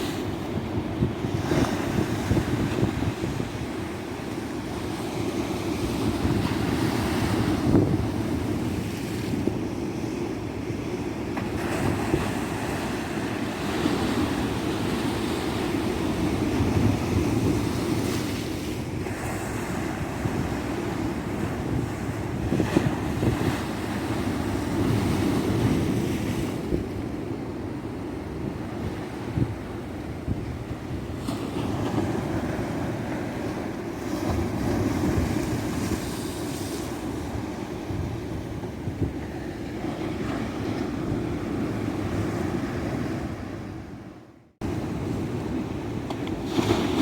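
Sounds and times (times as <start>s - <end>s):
wind buffeting microphone: 0.0s - 9.7s, 11.4s - 44.0s.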